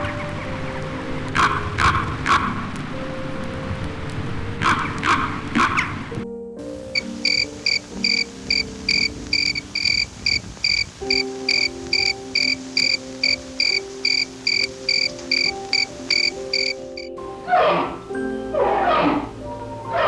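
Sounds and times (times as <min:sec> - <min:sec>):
soft music with held chords: 0:00.0 - 0:20.0
high cricket-like chirps: 0:06.9 - 0:17.1.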